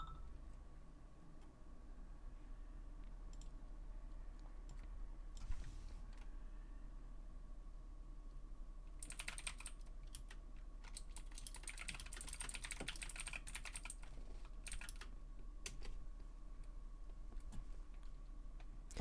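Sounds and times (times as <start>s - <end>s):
faint steady hum: 0.0s - 19.0s
keyboard typing: 9.0s - 15.1s.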